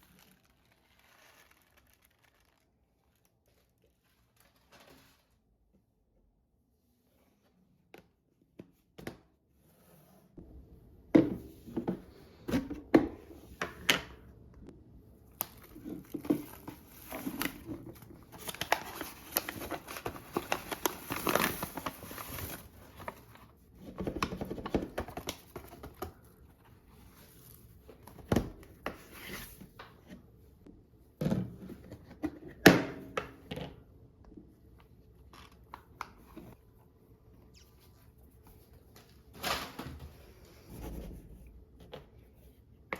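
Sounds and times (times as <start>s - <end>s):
packaging crinkling and tearing: 0.0s - 4.7s, 15.3s - 22.7s.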